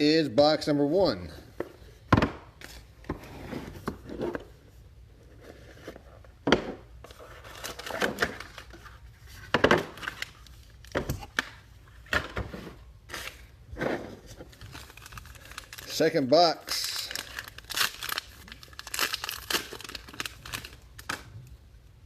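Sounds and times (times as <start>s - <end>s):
cards and packaging rustling: 7.0s - 11.4s, 14.2s - 21.4s.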